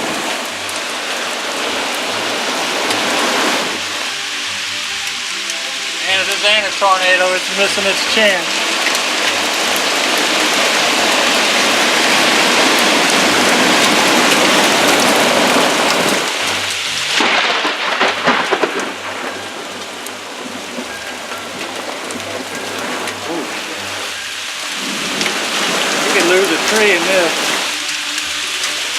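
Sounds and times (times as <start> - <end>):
heavy rain pouring: 0.0 - 28.9
low thunder rumbling: 7.7 - 27.7
sharp loud thunder cracks: 17.1 - 19.7.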